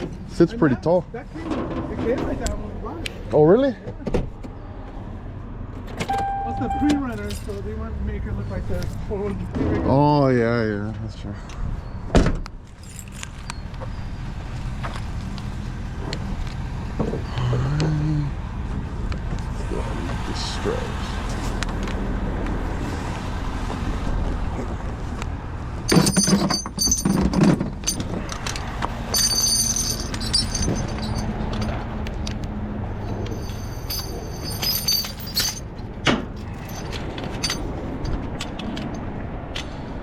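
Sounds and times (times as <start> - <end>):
metal strap hooks clinking: 25.9 - 32.4, 33.0 - 37.7.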